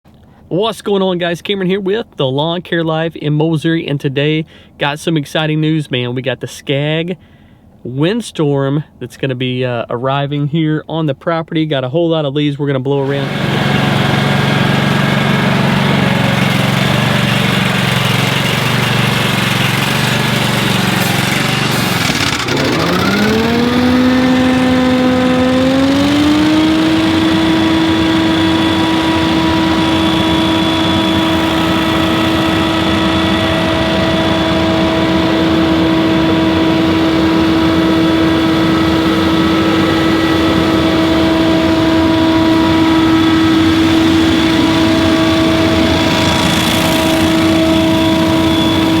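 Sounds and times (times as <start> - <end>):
leaf blower engine running: 13.0 - 49.0.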